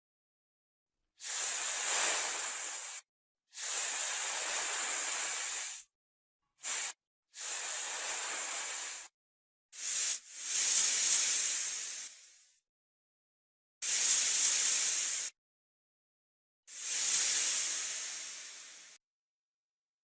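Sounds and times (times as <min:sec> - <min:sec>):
snake hissing: 0:01.2 - 0:03.0, 0:03.6 - 0:05.9, 0:06.6 - 0:09.1, 0:09.8 - 0:12.6, 0:13.8 - 0:15.4, 0:16.7 - 0:19.0.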